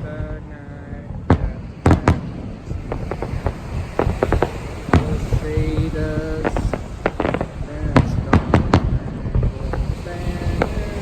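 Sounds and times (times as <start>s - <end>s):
fireworks bursting: 0.0s - 11.0s.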